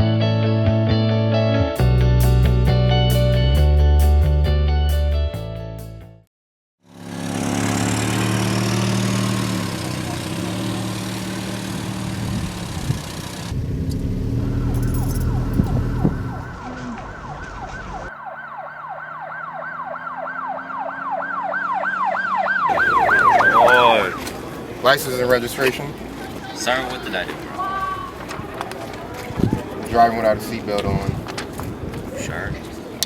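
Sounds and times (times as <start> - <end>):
car driving on road: 6.9 - 33.0
police siren wailing: 12.8 - 24.6.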